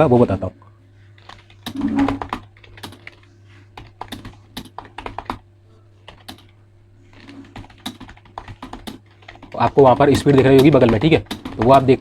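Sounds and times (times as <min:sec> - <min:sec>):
keyboard typing clicks: 0:01.2 - 0:03.2, 0:06.1 - 0:06.5, 0:07.6 - 0:11.8.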